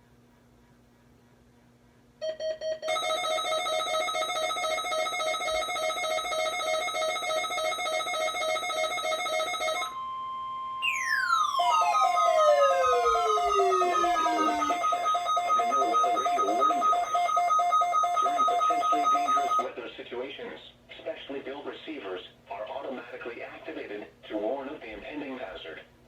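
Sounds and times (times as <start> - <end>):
steady warning alarm tone: 2.2 - 19.7
rapidly pulsing electronic beep: 5.3 - 19.6
falling siren-like sweep: 9.9 - 19.6.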